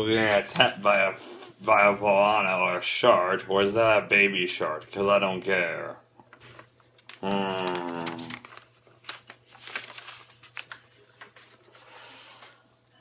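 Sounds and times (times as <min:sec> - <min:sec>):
paper rustling and crinkling: 0:06.3 - 0:12.7
drawn-out voice sound: 0:07.2 - 0:08.4.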